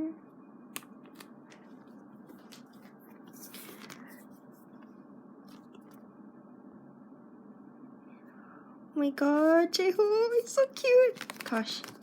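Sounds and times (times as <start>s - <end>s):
low steady background hiss: 0.0s - 12.0s
packaging rustling and clicking: 0.8s - 4.3s, 11.0s - 12.0s.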